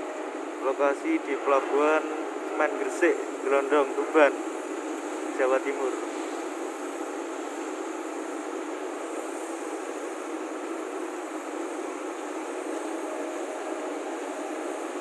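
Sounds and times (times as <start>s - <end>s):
steady rushing noise: 0.0s - 10.1s.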